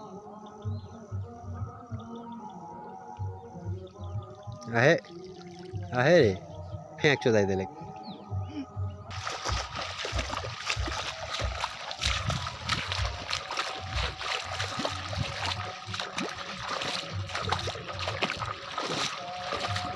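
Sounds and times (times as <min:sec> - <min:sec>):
water splashing and sloshing: 0:04.3 - 0:06.1, 0:09.1 - 0:19.9.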